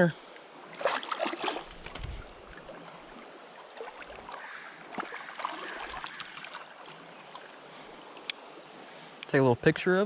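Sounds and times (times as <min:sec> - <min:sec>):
short water splashes: 0:00.7 - 0:07.5
creek water running: 0:00.7 - 0:09.0.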